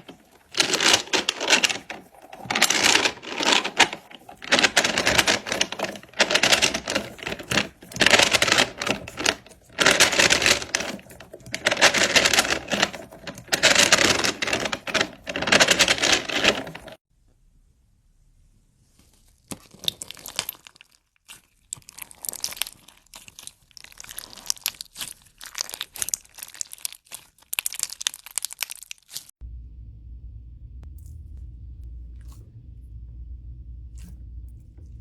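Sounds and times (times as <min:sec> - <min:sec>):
crunchy material being crushed: 0:00.0 - 0:17.0, 0:19.5 - 0:29.3
steady low hum: 0:29.4 - 0:35.0.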